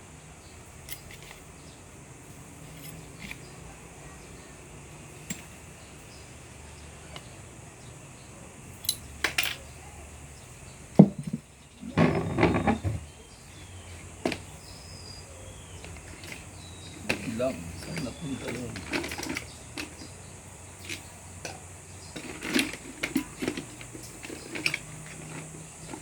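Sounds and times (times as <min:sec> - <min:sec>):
rattling and handling: 0:00.8 - 0:01.6, 0:02.6 - 0:03.5, 0:11.0 - 0:14.7, 0:15.7 - 0:26.0
pistol parts clicking: 0:08.8 - 0:09.6.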